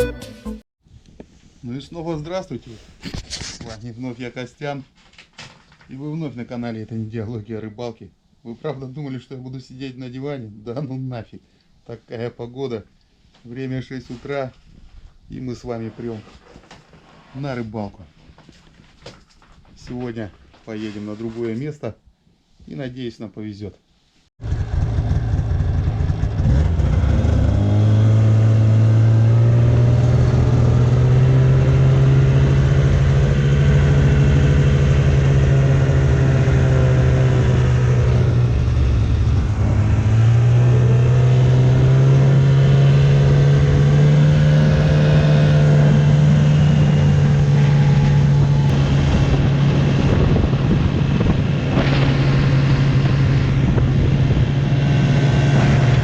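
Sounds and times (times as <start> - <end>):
snowmobile engine running: 24.4 - 56.0.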